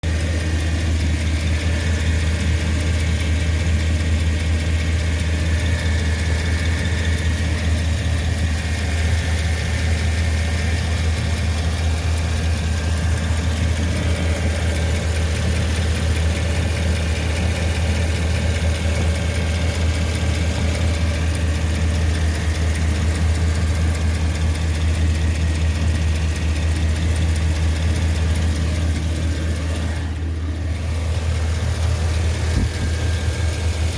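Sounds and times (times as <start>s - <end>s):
engine idling with a tick: 30.8s - 33.9s.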